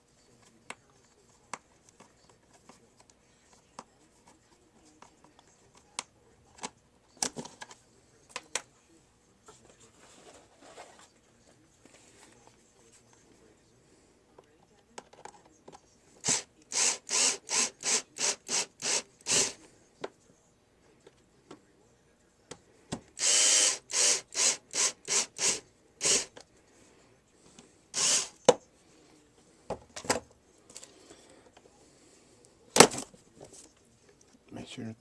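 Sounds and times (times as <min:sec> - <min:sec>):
screwdriver grinding screws into plastic: 0:16.2 - 0:19.6, 0:23.2 - 0:26.4, 0:28.0 - 0:28.4.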